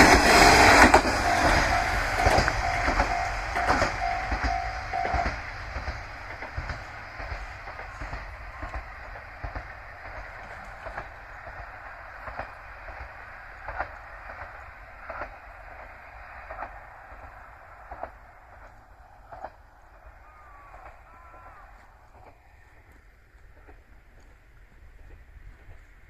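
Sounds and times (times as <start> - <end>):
crossing warning bell: 0.0 - 8.9
wheels knocking over rail joints: 0.0 - 15.4
train rumble: 0.0 - 26.0.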